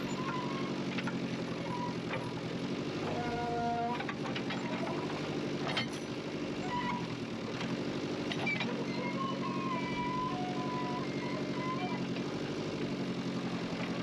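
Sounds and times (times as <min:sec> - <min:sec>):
short high squeaks: 0:00.0 - 0:02.4, 0:03.0 - 0:05.1, 0:06.6 - 0:07.2, 0:08.3 - 0:12.2
diesel engine running: 0:00.0 - 0:14.0.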